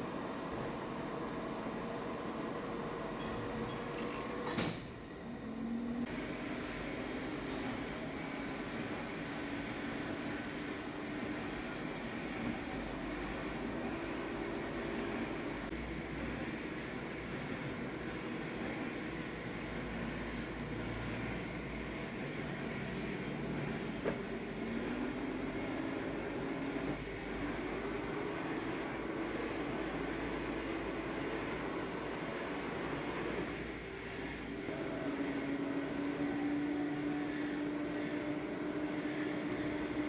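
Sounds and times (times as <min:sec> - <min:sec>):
metal lathe humming: 0:24.6 - 0:40.0.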